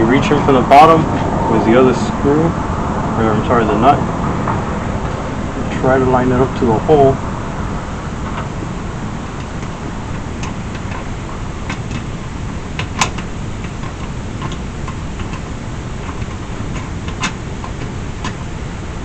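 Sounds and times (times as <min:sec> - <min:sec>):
steady low rumble: 0:00.0 - 0:19.0
small metallic clicks and taps: 0:12.8 - 0:15.4.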